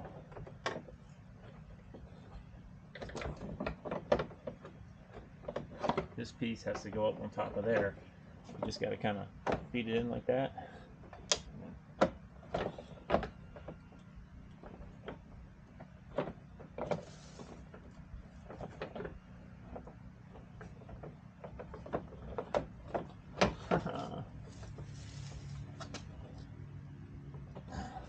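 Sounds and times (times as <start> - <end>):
plastic parts clicking and knocking: 0.0 - 8.8, 11.0 - 24.6
low steady hum: 0.0 - 28.0
rustling: 12.5 - 27.0.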